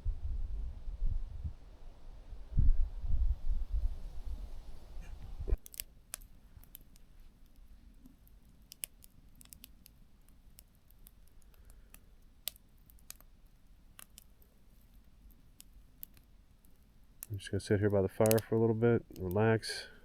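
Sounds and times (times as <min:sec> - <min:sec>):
low rumble: 0:00.0 - 0:05.6
campfire crackling: 0:00.8 - 0:20.0.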